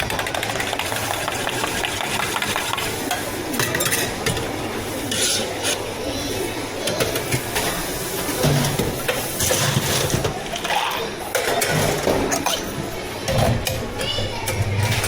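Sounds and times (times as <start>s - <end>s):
stirring and scraping: 1.5s - 5.9s.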